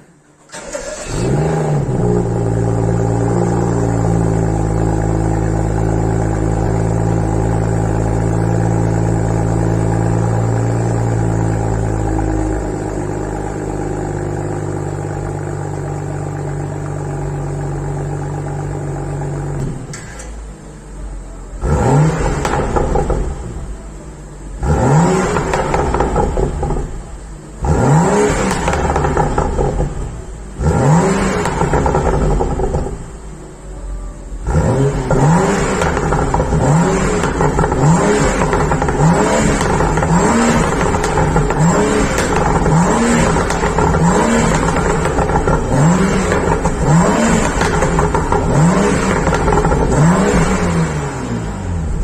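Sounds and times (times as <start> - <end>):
car engine revving: 0.5 - 20.8, 21.6 - 33.7, 34.3 - 52.0
exhaust pops and crackles: 22.2 - 23.7, 25.0 - 27.2, 28.0 - 33.1, 35.1 - 50.8.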